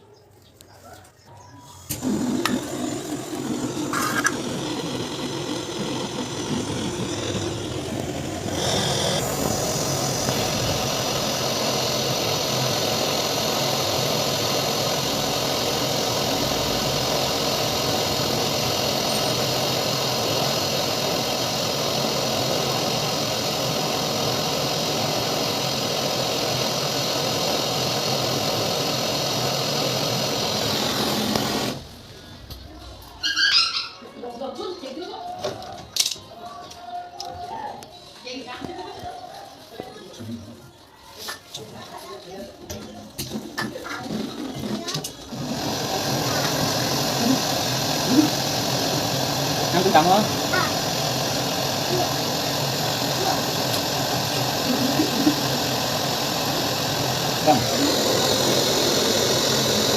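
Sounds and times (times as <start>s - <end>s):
machine motor humming: 1.8s - 31.9s, 44.1s - 59.9s.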